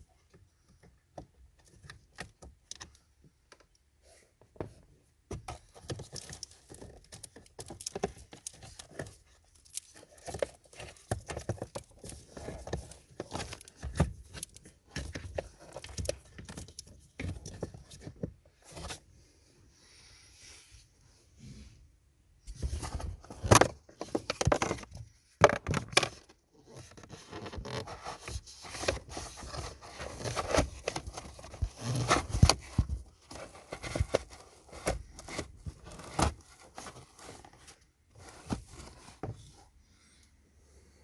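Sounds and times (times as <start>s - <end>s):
plastic scraping and rustling: 4.7s - 19.0s, 22.5s - 39.6s.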